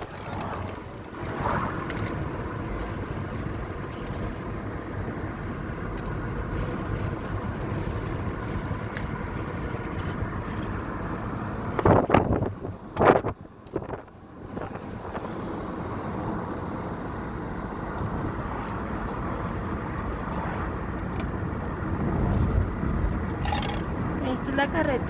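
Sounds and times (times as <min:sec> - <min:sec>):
car driving rumble: 0:00.0 - 0:25.0.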